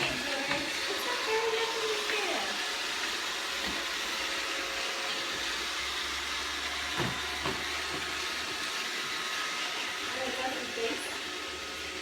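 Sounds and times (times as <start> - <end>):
robot vacuum whirring: 0.0 - 12.0.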